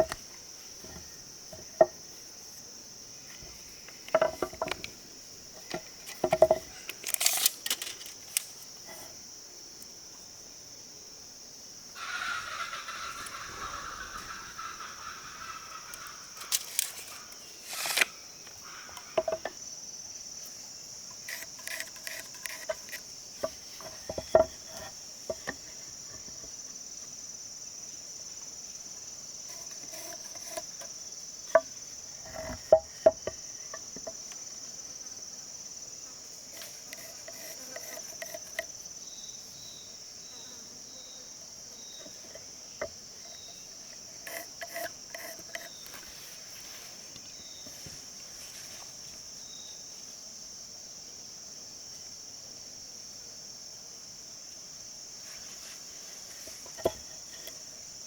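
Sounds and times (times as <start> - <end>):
insects chirring: 0.0 - 58.0
sharp knocks and clicks: 21.3 - 25.6.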